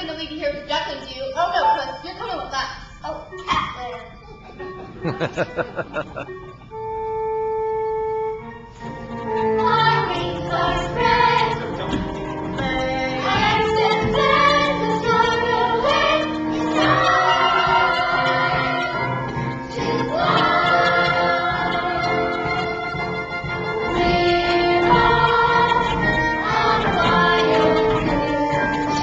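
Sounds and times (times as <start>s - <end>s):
instrumental accompaniment: 1.4s - 29.0s
voices singing together: 9.2s - 29.0s.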